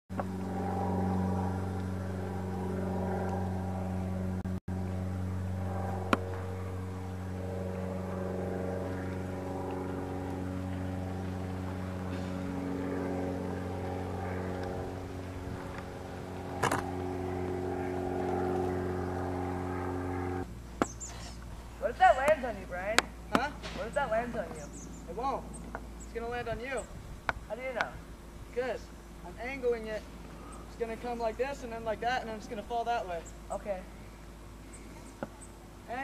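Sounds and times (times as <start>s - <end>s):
engine running steadily: 0.1s - 36.0s.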